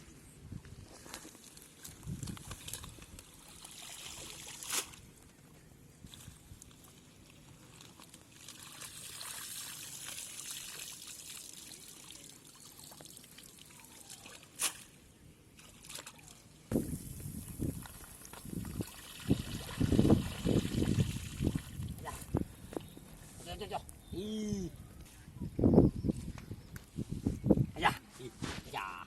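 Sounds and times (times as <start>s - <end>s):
splashes and sloshes in mud: 0.9s - 5.1s, 15.6s - 16.5s
muddy water trickling: 0.9s - 5.4s, 6.0s - 23.0s.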